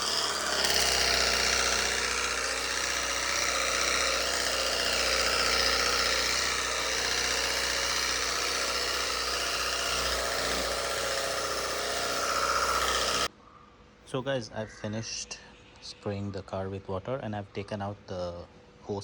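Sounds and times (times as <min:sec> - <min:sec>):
water spraying from nozzle: 0:00.0 - 0:12.9
pressure washer pump motor: 0:00.0 - 0:13.3.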